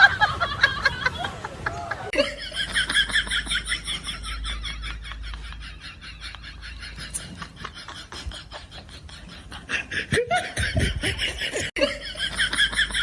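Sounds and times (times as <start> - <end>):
person laughing: 0.0 - 13.0.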